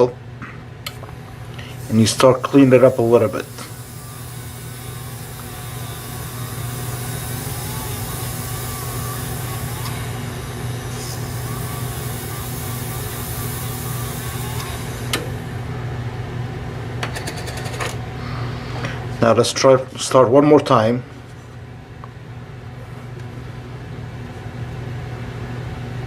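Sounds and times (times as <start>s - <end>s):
machine motor running: 1.0s - 16.2s
hiss of dresser on wheel: 1.6s - 15.5s.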